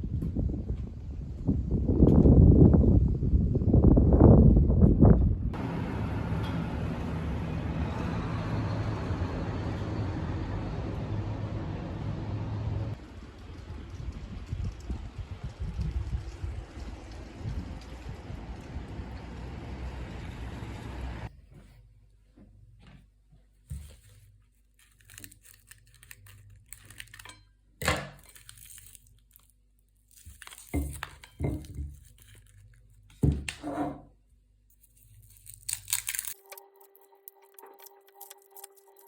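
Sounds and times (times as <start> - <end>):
crinkling and tearing sounds: 23.7 - 33.2, 34.7 - 39.0.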